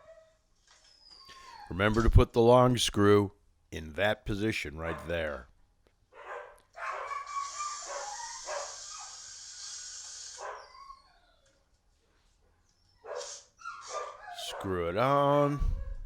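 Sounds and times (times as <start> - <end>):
dog barking: 4.9 - 5.1, 6.2 - 9.2, 10.4 - 10.7, 13.0 - 14.8.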